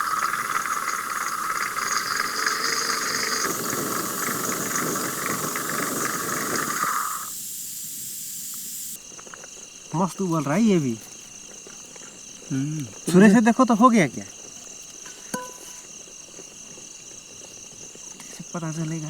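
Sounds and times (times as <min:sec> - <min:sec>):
pressure cooker whistle hissing: 0:00.0 - 0:09.0.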